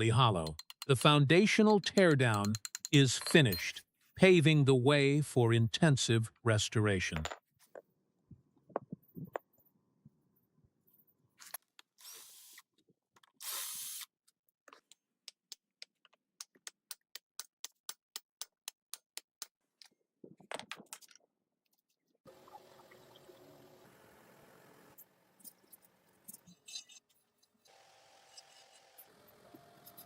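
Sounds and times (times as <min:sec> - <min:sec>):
short hissing bursts: 0:13.4 - 0:14.1.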